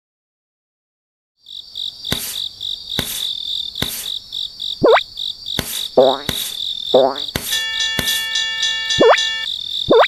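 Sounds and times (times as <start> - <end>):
pulsing high tone: 7.0 - 9.5.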